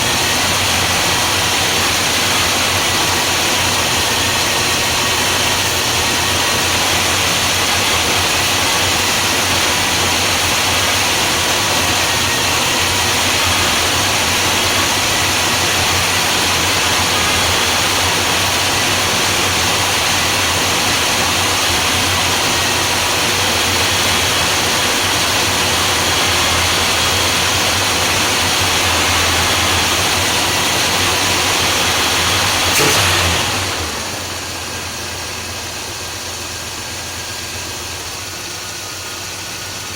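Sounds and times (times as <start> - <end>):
engine idling: 0.0 - 39.9
sharp click: 32.7 - 33.4.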